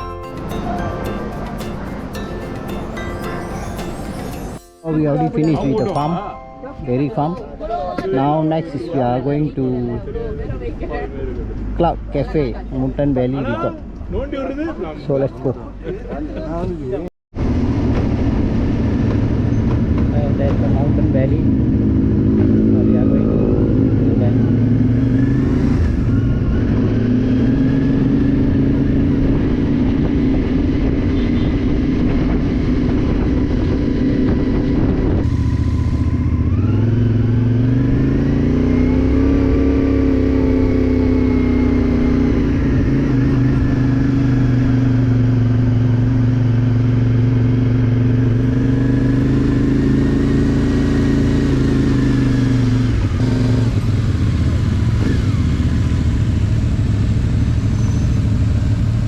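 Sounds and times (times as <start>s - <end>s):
motorcycle engine running: 26.3s - 59.0s.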